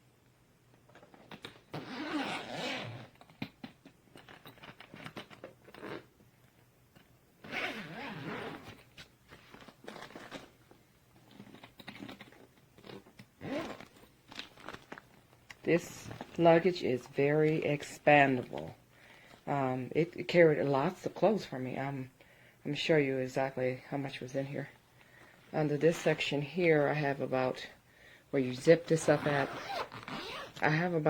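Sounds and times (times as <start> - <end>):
suitcase zipper rasping: 1.3 - 3.3, 4.2 - 6.1, 7.4 - 8.8, 9.6 - 10.6, 11.2 - 14.8, 29.0 - 30.6
suitcase handling clicks and knocks: 11.2 - 14.4.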